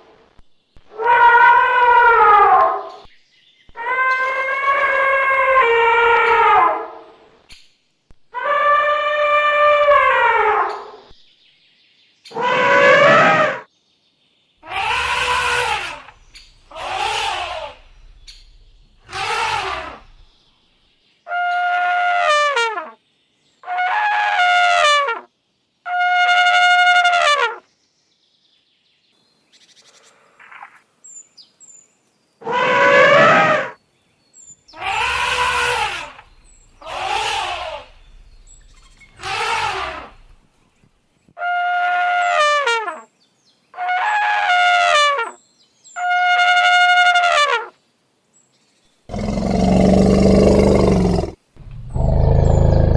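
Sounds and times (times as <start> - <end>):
elephant trumpeting: 12.3 - 13.6, 14.6 - 20.2, 32.4 - 33.8, 34.8 - 40.4, 49.1 - 52.9.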